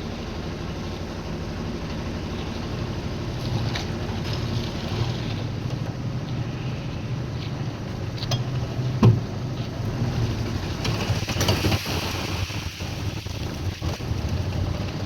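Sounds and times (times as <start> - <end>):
concrete mixer engine running: 0.0 - 15.0.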